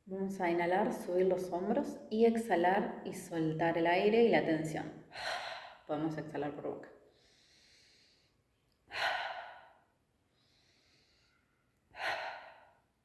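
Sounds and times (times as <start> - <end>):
faint in-breaths: 5.1 - 5.9, 7.0 - 13.0.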